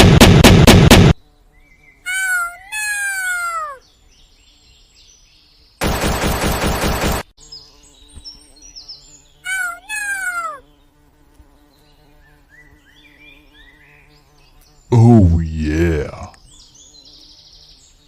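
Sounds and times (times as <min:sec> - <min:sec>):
rapid popping bursts: 0:00.0 - 0:01.2
falling meow-like glides: 0:02.1 - 0:03.8, 0:09.5 - 0:10.6.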